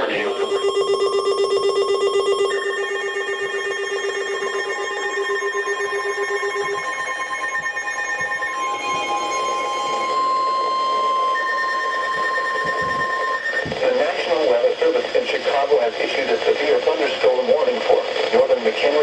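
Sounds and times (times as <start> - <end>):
electronic alert tones: 0.0 - 15.0
fast-pulsing low beep: 0.0 - 19.0
steady single-pitch alarm tone: 0.0 - 19.0.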